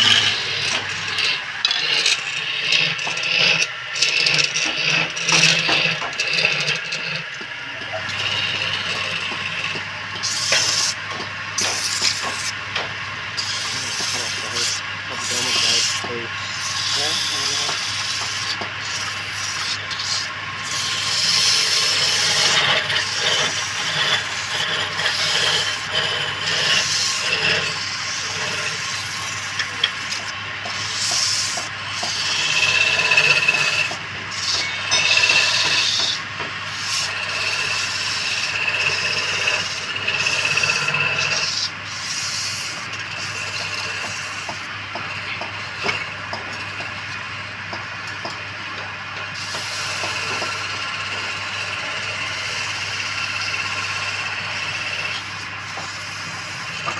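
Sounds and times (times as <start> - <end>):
low motor hum: 0.0 - 41.6
tool scraping spinning wood: 0.0 - 56.9.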